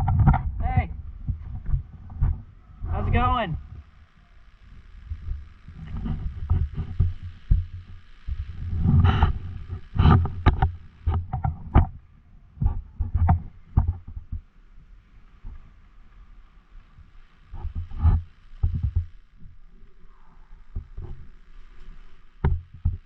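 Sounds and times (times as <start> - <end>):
irregular low thuds: 0.0 - 15.8, 16.9 - 19.7, 20.6 - 23.0
faint hiss: 14.6 - 23.0.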